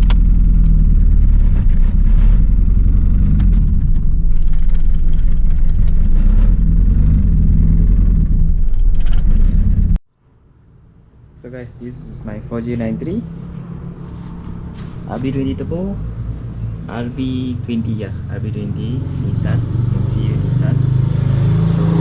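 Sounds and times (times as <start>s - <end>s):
car engine running rough: 0.0s - 10.0s.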